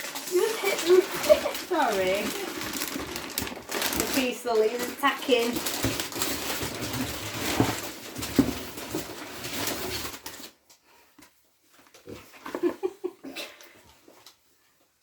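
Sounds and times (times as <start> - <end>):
packaging and leaves rustling: 0.0 - 10.6.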